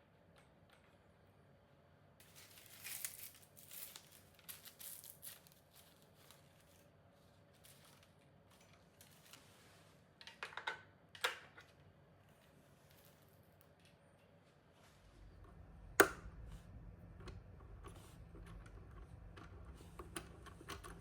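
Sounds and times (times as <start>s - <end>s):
rustling crinkling handling noise: 2.2s - 10.1s, 12.3s - 15.6s.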